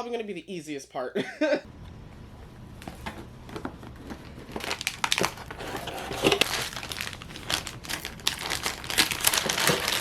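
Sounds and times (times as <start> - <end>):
packaging crinkling and rustling: 2.8 - 10.0.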